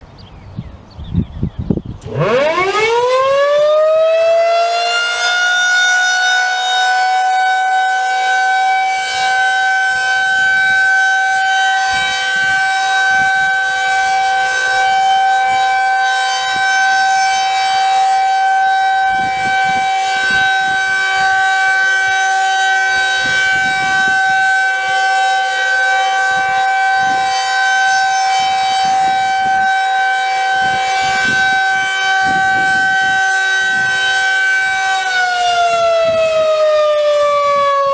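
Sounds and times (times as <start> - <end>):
rotating warning siren: 1.1 - 37.9.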